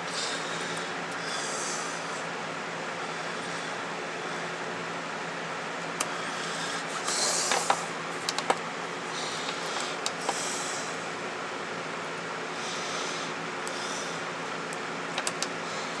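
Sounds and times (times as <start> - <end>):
background hiss and hum: 0.0 - 16.0
laptop keys clicking: 7.5 - 8.6, 15.2 - 15.5.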